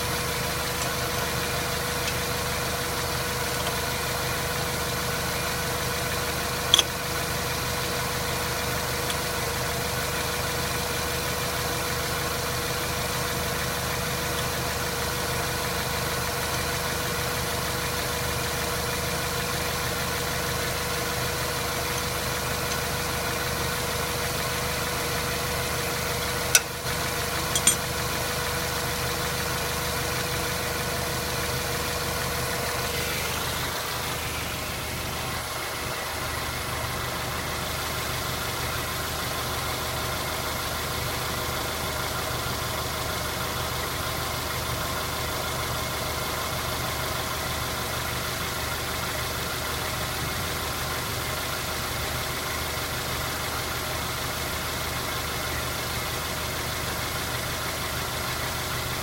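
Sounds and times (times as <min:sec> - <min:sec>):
car engine running: 0:00.0 - 0:59.0
sharp click: 0:06.7 - 0:06.9, 0:27.6 - 0:27.8.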